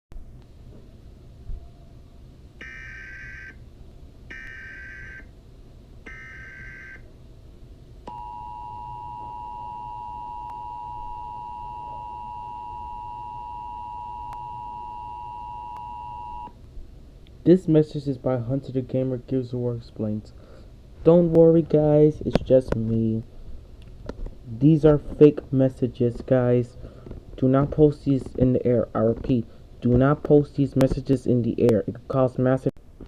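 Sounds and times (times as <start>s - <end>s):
steady dual-tone alert signal: 2.6s - 3.6s, 4.3s - 5.3s, 6.1s - 7.0s, 8.1s - 16.5s.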